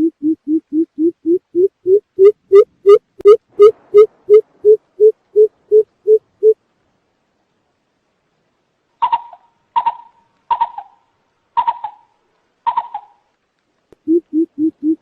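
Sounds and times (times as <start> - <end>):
sharp bird calls: 9.0 - 13.3
deep bird hoots: 14.0 - 15.0.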